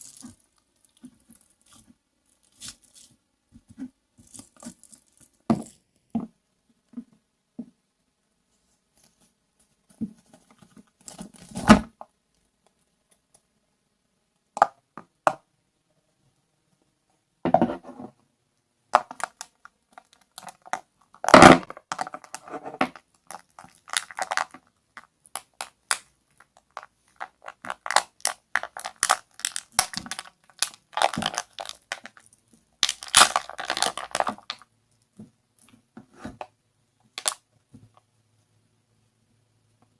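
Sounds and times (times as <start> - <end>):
ice crunching and cracking: 32.8 - 34.5.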